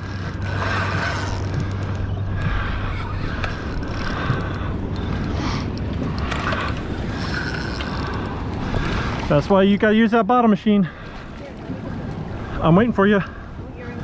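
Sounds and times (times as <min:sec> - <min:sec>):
fishing reel cranking: 0:00.0 - 0:02.0, 0:03.3 - 0:08.4
steady low hum: 0:00.0 - 0:09.3.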